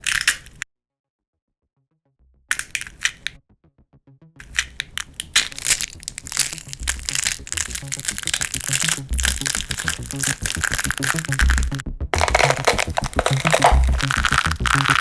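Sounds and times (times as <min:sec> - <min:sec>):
wet crunching of flesh and bone: 0:04.4 - 0:15.0.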